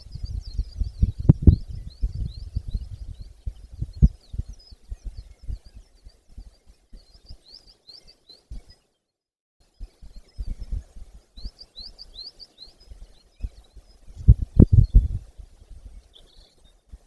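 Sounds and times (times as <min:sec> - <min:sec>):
thumps and rumble on microphone: 0:00.0 - 0:07.3, 0:09.8 - 0:11.6, 0:12.9 - 0:16.1
high bird chirps: 0:00.0 - 0:09.0, 0:09.8 - 0:16.8.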